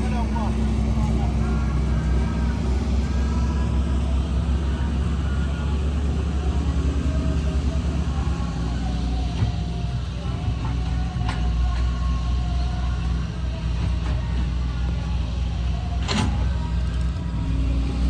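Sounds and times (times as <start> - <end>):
heavy diesel engine droning: 0.0 - 18.0.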